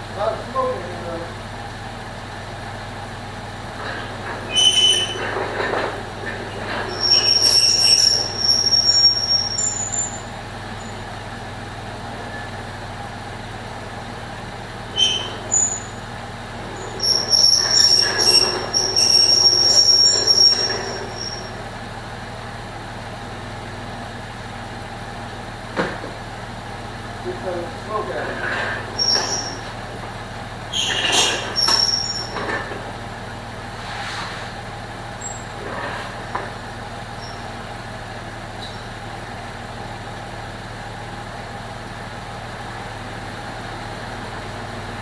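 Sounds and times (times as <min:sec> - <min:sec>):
car engine idling: 0:00.0 - 0:04.5, 0:08.0 - 0:17.6
loud high-pitched squeals: 0:03.8 - 0:11.1, 0:14.9 - 0:21.8, 0:28.0 - 0:32.9, 0:37.1 - 0:37.6.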